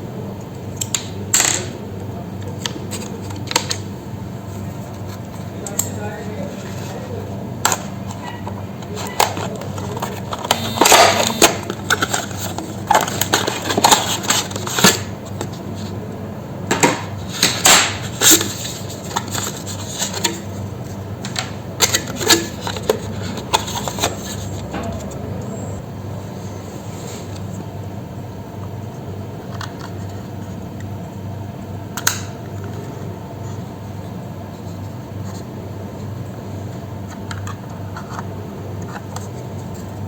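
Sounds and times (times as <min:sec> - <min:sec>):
steady low hum: 0:00.0 - 0:37.1
laptop parts clattering: 0:21.2 - 0:25.5.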